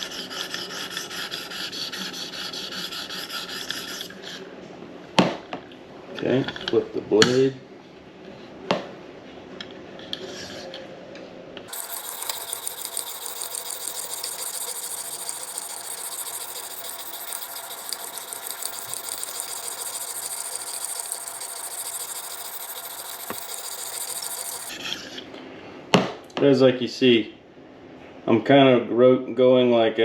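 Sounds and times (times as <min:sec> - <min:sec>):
sharpening stone on knife edge: 0:00.0 - 0:04.4, 0:11.7 - 0:24.9.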